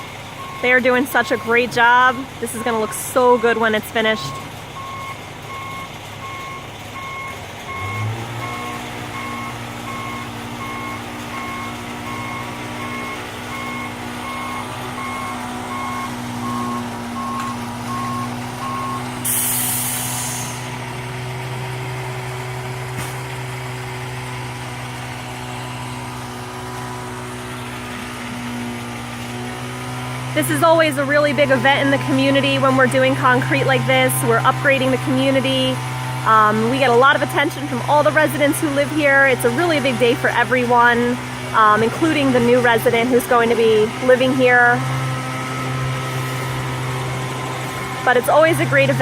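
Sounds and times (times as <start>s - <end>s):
reversing alarm beeping: 0.0s - 20.8s
diesel truck engine running: 0.0s - 49.0s
air brakes hissing: 19.2s - 20.8s.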